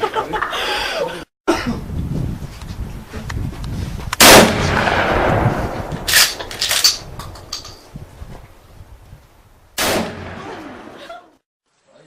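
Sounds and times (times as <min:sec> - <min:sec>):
sharp cracks and clatters: 0:04.1 - 0:07.9
loud gunshot echoing: 0:04.2 - 0:06.6, 0:09.8 - 0:10.8.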